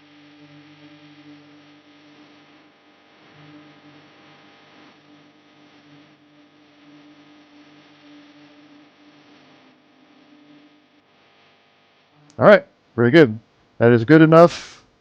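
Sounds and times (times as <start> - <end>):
faint electrical hum: 0.0 - 15.0.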